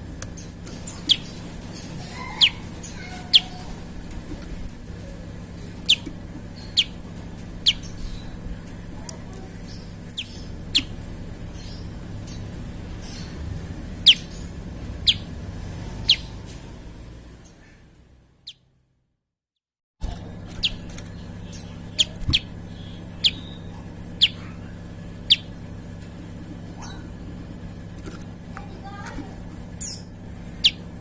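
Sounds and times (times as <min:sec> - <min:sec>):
steady low hum: 0:00.0 - 0:18.6, 0:20.0 - 0:31.0
bird chirping: 0:00.3 - 0:03.8, 0:05.6 - 0:07.0, 0:07.6 - 0:08.4, 0:09.6 - 0:16.5, 0:18.4 - 0:18.7, 0:20.5 - 0:25.7, 0:29.8 - 0:30.8.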